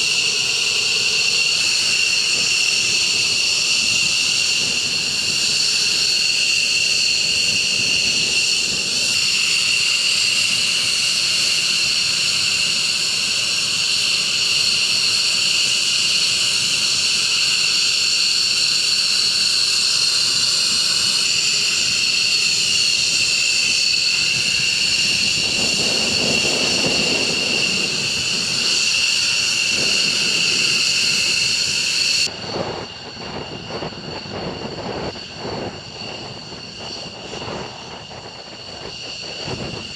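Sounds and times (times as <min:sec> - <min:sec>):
dull aircraft engine noise: 0:00.0 - 0:39.9
jet engine whine: 0:00.0 - 0:39.9.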